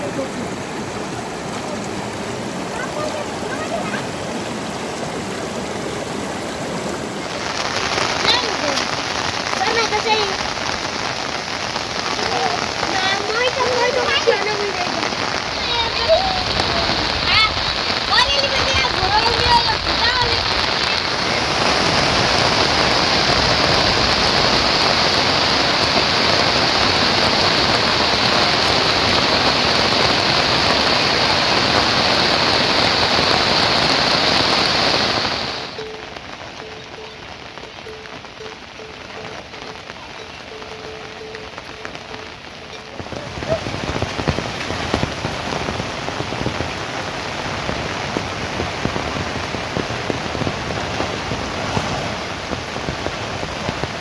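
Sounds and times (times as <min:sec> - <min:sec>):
rain hissing: 0:00.0 - 0:54.0
raindrops ticking: 0:00.0 - 0:54.0.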